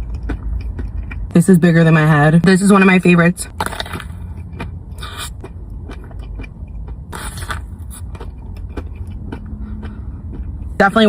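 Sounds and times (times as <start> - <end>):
person chewing: 0.0 - 1.4, 3.5 - 10.9
steady low rumble: 0.0 - 11.0.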